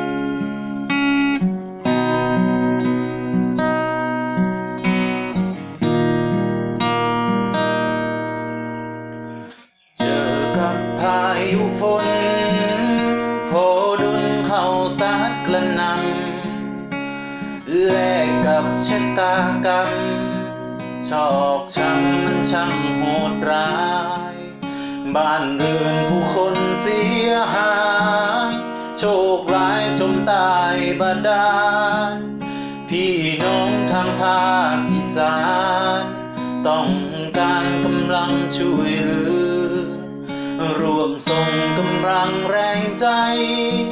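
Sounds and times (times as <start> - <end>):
acoustic guitar strumming: 0.0 - 43.9
man singing: 9.4 - 16.8, 17.5 - 43.9.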